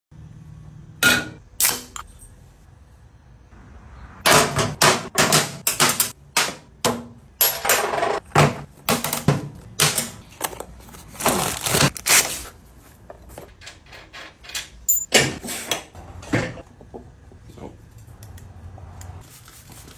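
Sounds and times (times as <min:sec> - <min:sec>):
metal tools clanking and rattling: 0:13.2 - 0:15.4.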